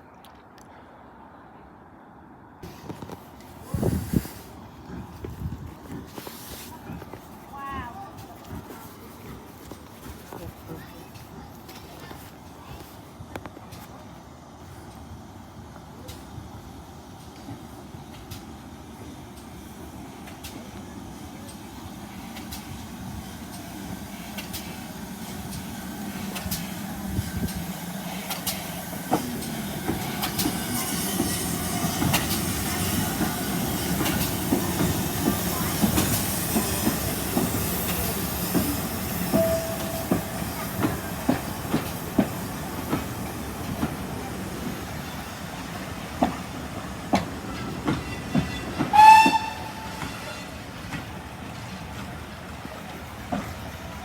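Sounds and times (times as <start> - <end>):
train rumble on rails: 1.6 - 54.0
brief train squeal: 47.8 - 50.6.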